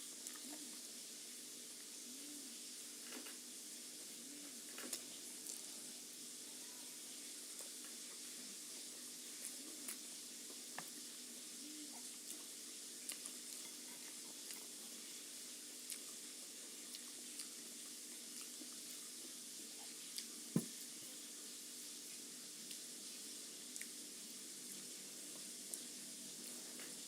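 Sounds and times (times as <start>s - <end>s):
food sizzling in a pan: 5.2s - 20.0s.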